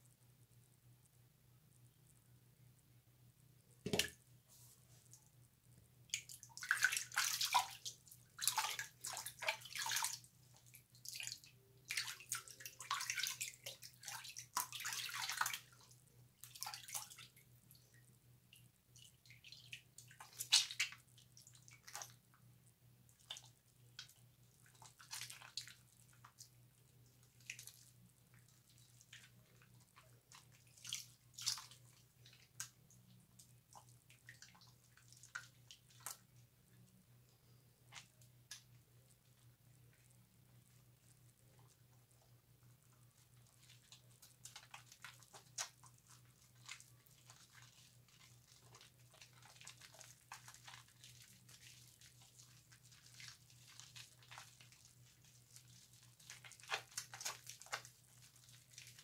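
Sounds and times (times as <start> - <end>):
water dripping: 6.1 - 22.2
soap lathering squishy rubbing: 6.1 - 22.4, 23.1 - 36.5, 37.9 - 59.0.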